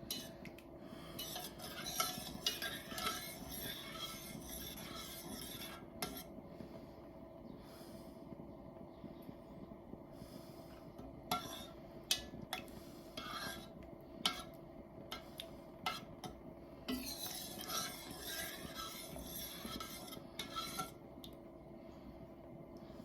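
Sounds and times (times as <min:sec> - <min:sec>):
spoon scraping a pot: 0:00.0 - 0:06.4, 0:11.2 - 0:21.1
steady low hum: 0:00.0 - 0:23.0
spoon clinking against pot: 0:16.9 - 0:21.0.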